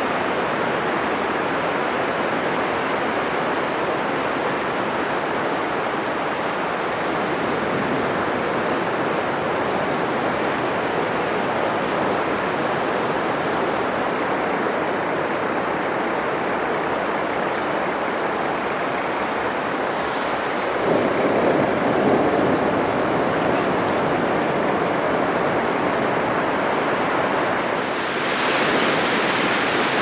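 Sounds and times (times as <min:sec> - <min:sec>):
surf breaking on beach: 0:12.4 - 0:30.0.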